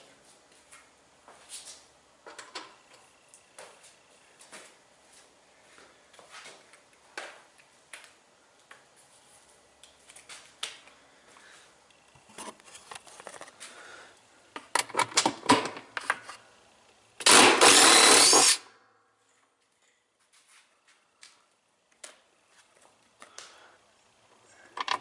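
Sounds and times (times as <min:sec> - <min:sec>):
power tool running: 0:17.2 - 0:18.7.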